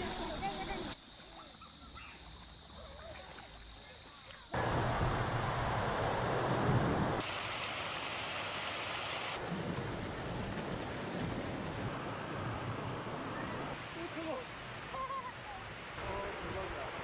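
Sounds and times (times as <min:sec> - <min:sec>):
stream rushing over rocks: 0:04.6 - 0:09.4.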